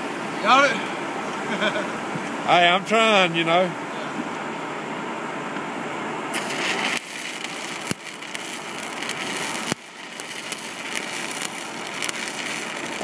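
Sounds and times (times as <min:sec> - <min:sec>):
arc welding crackling hiss: 0:06.3 - 0:13.0
sharp welding clicks: 0:06.4 - 0:13.0.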